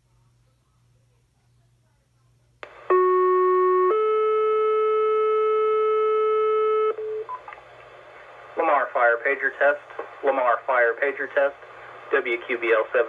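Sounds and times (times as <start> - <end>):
radio squelch hiss: 7.8 - 13.0.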